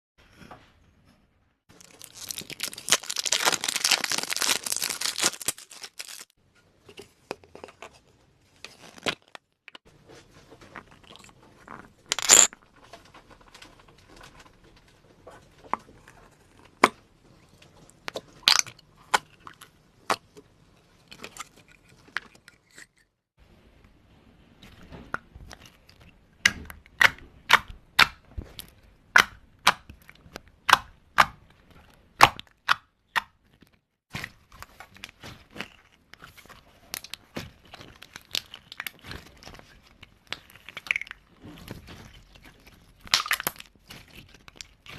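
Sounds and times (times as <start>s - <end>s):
slime crackling: 1.7s - 6.3s.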